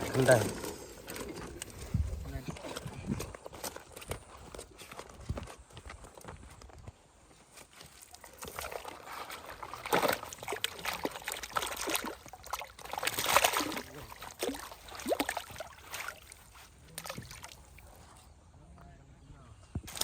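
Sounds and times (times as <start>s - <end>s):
water splashing and sloshing: 7.6s - 18.2s.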